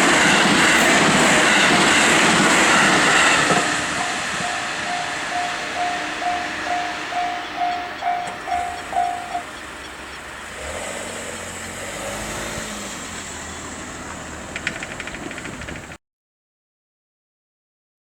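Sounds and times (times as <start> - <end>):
level crossing warning bell: 0.0 - 11.7.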